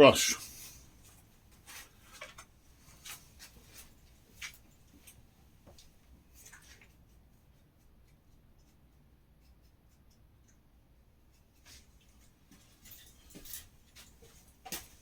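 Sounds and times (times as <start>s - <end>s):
small parts scratching and clicking: 5.8s - 10.6s.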